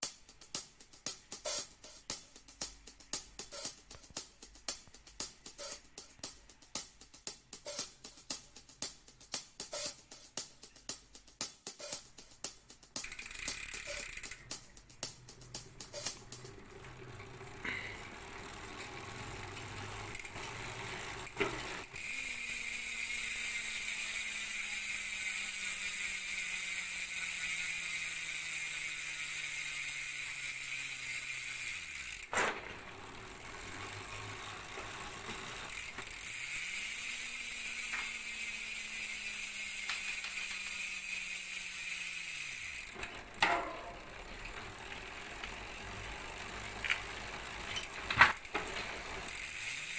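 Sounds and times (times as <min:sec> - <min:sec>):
bike hub freewheel buzz: 0:13.0 - 0:49.9
wheel stopping click: 0:13.0 - 0:49.9.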